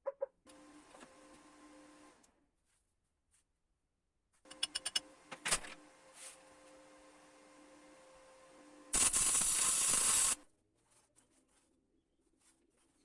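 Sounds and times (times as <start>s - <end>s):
electric motor humming: 9.0s - 10.4s.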